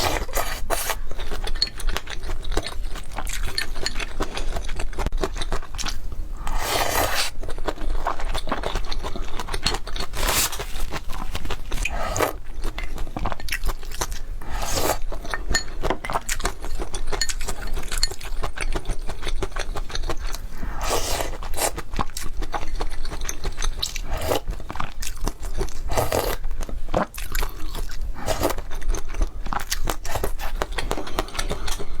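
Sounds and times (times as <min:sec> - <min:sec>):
noodle slurping: 0:20.6 - 0:21.8.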